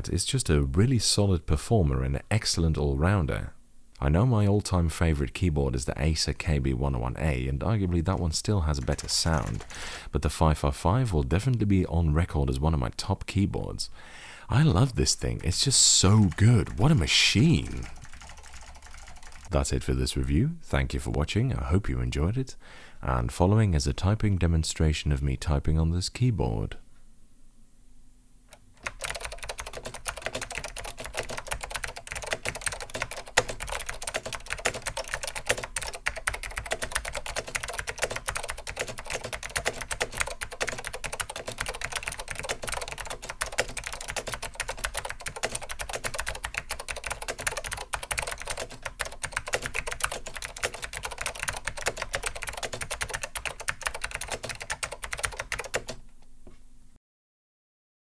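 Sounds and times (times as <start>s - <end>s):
clicky keyboard typing: 8.1s - 10.0s, 15.7s - 19.5s, 28.5s - 56.0s.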